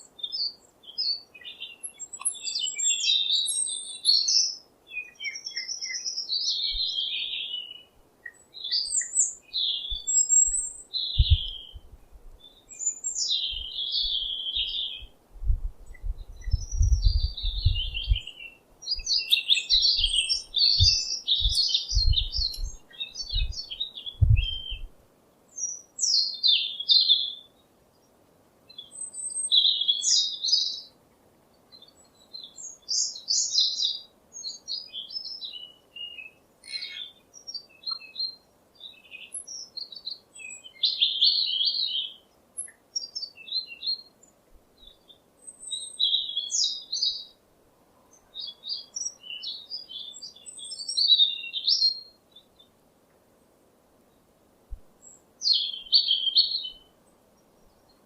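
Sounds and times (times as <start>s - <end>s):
small songbirds chirping: 0.0s - 58.0s
dull low bumps: 11.2s - 12.4s, 15.4s - 18.3s, 20.8s - 23.6s, 24.2s - 24.9s.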